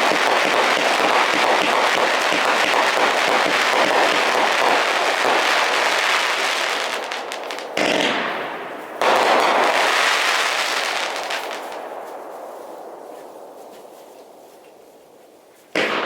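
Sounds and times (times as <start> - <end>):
firework bursts: 0.0 - 12.0, 15.7 - 16.0
fireworks crackling: 0.0 - 16.0.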